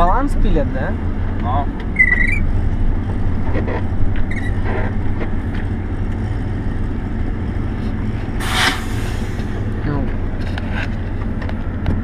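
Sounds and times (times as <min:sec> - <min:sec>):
diesel truck engine running: 0:00.0 - 0:12.0
air hiss: 0:08.4 - 0:09.4.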